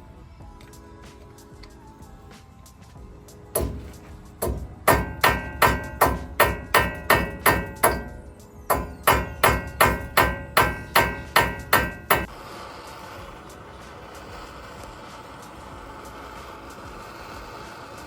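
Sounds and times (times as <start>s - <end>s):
hammer striking metal: 3.5s - 12.3s.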